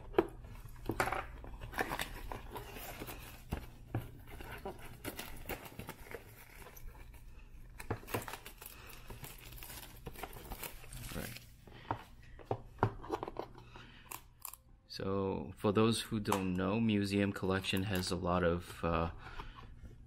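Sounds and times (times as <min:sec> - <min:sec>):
cardboard rustling: 0:00.0 - 0:11.5
plastic wrap crinkling and tearing: 0:01.6 - 0:11.6.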